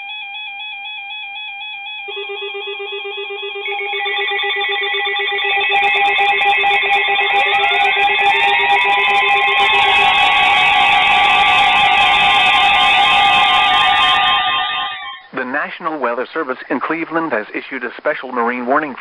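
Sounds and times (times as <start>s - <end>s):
pulsing lower beep: 1.6s - 15.3s
siren-like rising glides: 2.1s - 15.3s
warbling electronic beep: 2.1s - 15.3s.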